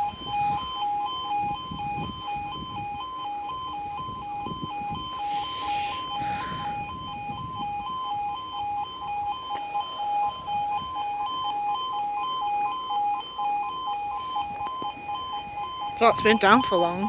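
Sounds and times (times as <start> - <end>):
two-tone electronic crossing alarm: 0.0 - 17.0.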